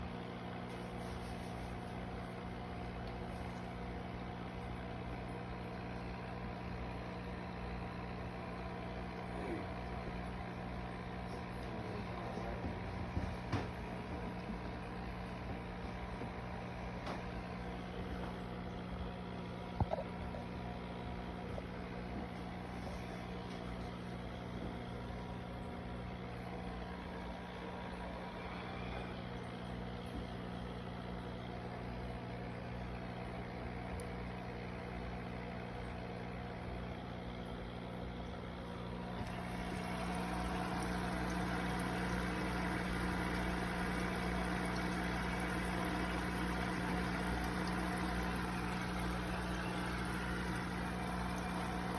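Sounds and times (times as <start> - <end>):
machine hum: 38.5 - 51.9.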